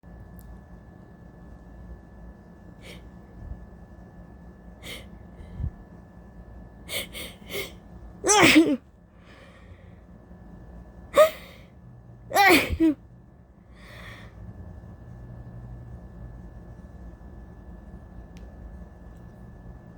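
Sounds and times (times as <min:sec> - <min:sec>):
woman sniffing: 0:02.8 - 0:03.1, 0:04.8 - 0:05.5, 0:06.9 - 0:08.7
woman sneezing: 0:08.3 - 0:08.8, 0:12.4 - 0:13.0.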